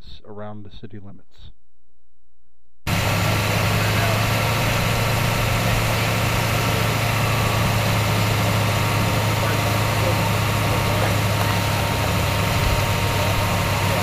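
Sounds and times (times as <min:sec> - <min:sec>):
low engine-like drone: 0:02.9 - 0:14.0.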